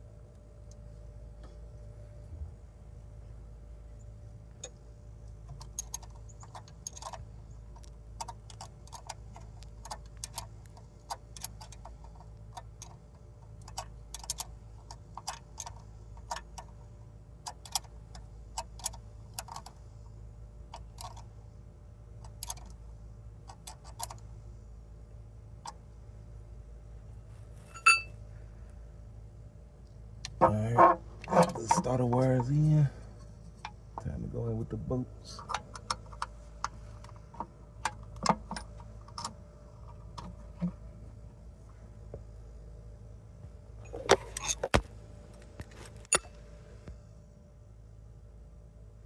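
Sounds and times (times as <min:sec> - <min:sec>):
ringing metal clink: 0:27.7 - 0:28.2.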